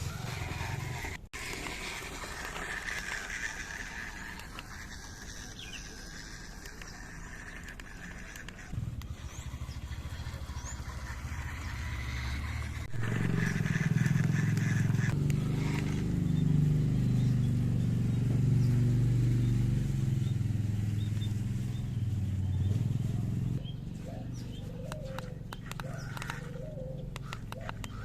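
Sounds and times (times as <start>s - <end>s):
toy car electric motor whirring: 0.0s - 17.3s, 24.8s - 28.0s.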